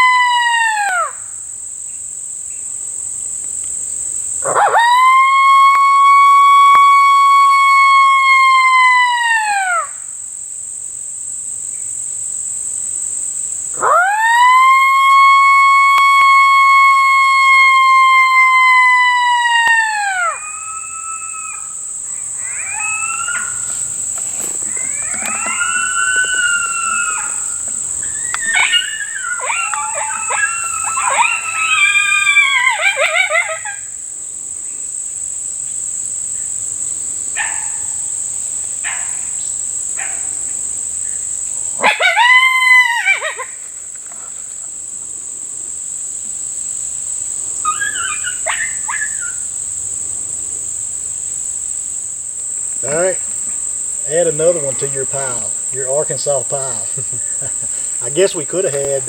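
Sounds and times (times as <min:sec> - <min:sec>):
coyotes howling and yipping: 0:00.0 - 0:01.3, 0:04.4 - 0:10.1, 0:13.7 - 0:34.1, 0:37.3 - 0:38.1, 0:38.8 - 0:44.6, 0:47.4 - 0:50.5, 0:52.6 - 0:59.0.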